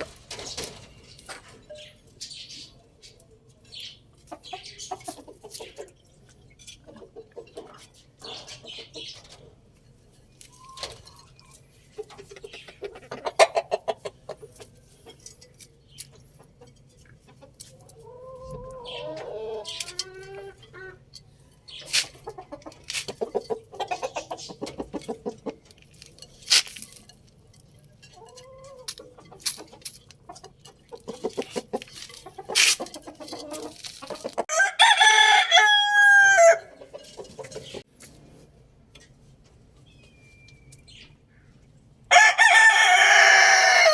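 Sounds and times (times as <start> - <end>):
chicken clucks and calls: 0.0 - 43.9
rooster crowing: 34.5 - 36.7, 42.1 - 43.9.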